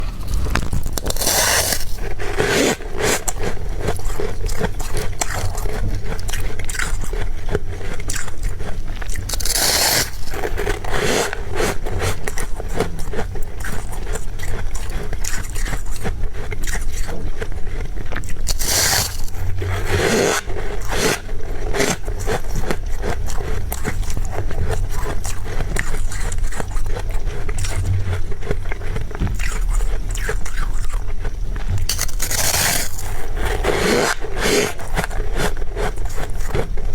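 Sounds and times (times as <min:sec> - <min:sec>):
frost being scraped and crunched: 0:00.0 - 0:05.7, 0:06.7 - 0:12.3, 0:18.4 - 0:36.5.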